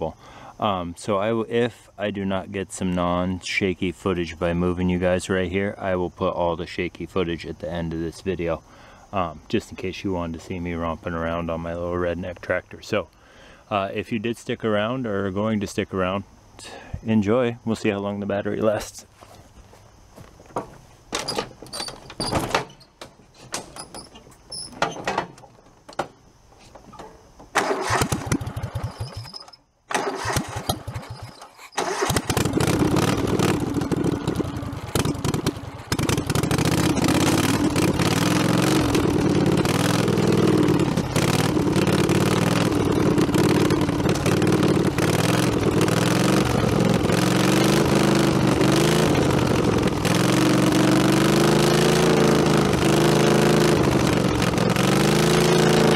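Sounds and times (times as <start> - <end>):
tractor engine cranking and running: 20.4 - 55.9.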